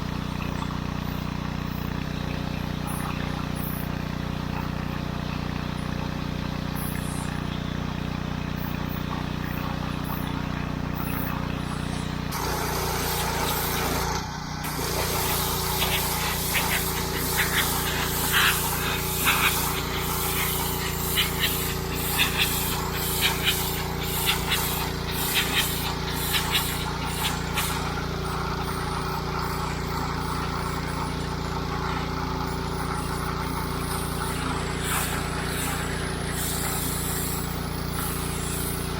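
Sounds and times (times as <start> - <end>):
pressure washer engine running: 0.0 - 38.9
high-pressure water jet hissing: 9.4 - 38.9.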